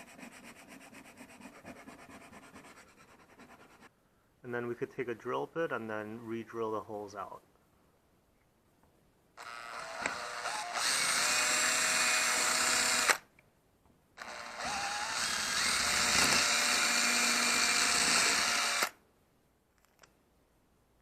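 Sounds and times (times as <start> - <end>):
power drill drilling plastic: 9.4 - 13.2, 14.2 - 19.0.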